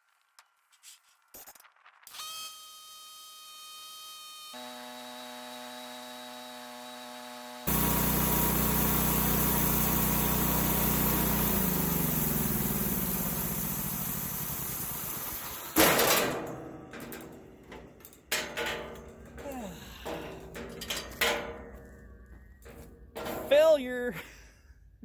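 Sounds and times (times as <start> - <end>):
sawmill gasoline engine running: 7.7 - 15.8
steady hum: 7.7 - 15.8.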